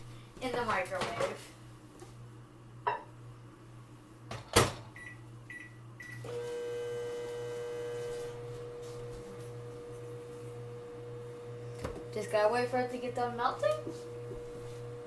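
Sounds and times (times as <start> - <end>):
microwave oven humming: 0.0 - 15.0
microwave door shutting: 4.3 - 5.0.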